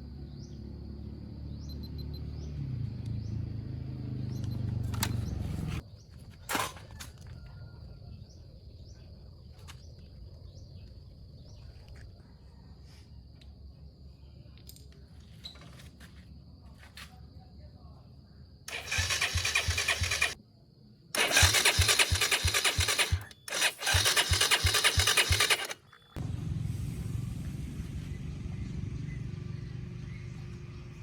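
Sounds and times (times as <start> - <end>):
faint high chirp: 1.5 - 2.5, 25.8 - 26.2
motorcycle engine idling: 4.3 - 5.8, 18.7 - 20.4, 21.2 - 31.0.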